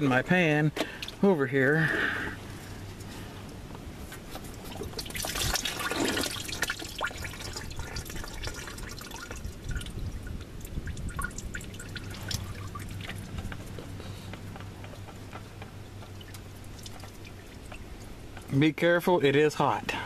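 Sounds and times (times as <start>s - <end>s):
oil pouring and dripping into a pan: 4.6s - 13.4s, 16.0s - 18.5s.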